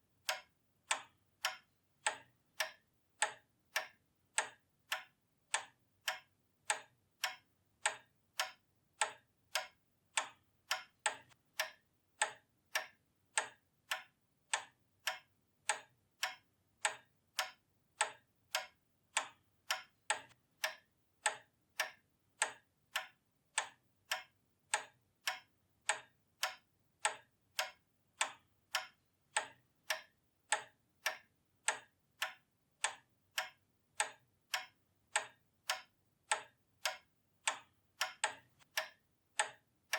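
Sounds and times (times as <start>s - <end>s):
pendulum clock ticking: 0.0s - 39.9s.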